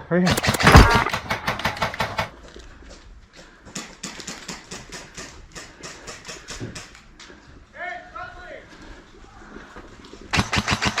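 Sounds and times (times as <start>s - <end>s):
airsoft gun firing: 0.3s - 2.3s.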